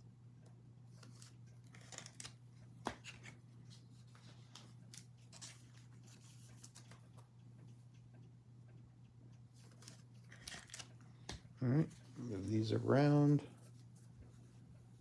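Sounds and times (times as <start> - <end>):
faint low hum: 0.0 - 15.0
trading cards being handled: 9.6 - 14.1.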